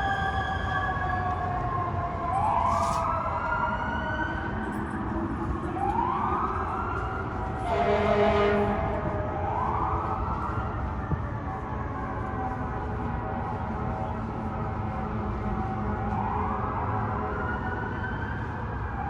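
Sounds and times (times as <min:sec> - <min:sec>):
city traffic rumble: 0:00.0 - 0:19.0
fire truck siren wailing: 0:00.0 - 0:19.0
air horn blast: 0:07.6 - 0:08.9.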